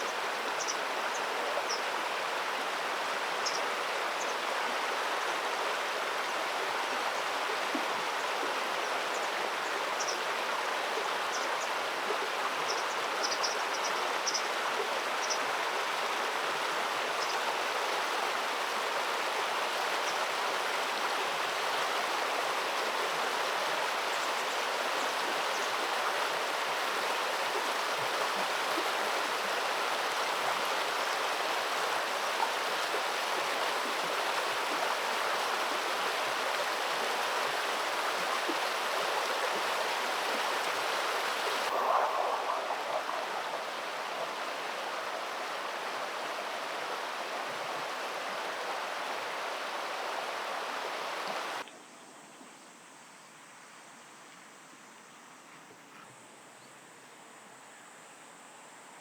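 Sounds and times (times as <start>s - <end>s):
river water rushing: 14.1s - 51.6s.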